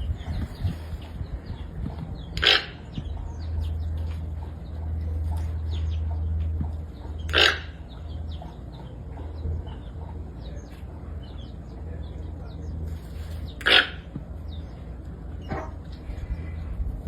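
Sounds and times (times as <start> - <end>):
low steady rumble: 0.0 - 17.0
small birds chirping: 0.0 - 17.0
hornbill harsh call: 2.4 - 3.0, 7.2 - 8.8, 13.4 - 14.1.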